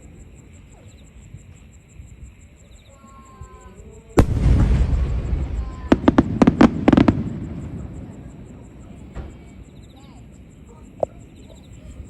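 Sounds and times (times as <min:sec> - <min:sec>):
firework boom: 0:04.2 - 0:09.6
firework sharp cracks: 0:04.2 - 0:09.8.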